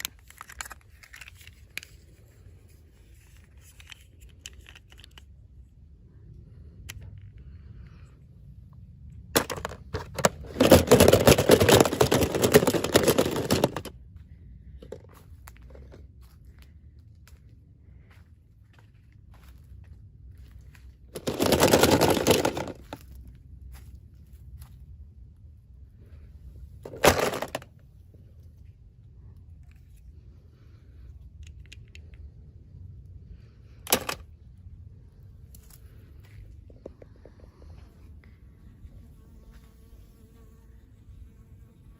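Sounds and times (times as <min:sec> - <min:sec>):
packaging crinkling and tearing: 0:10.0 - 0:13.9, 0:21.1 - 0:22.9
faint small clicks: 0:31.3 - 0:32.3.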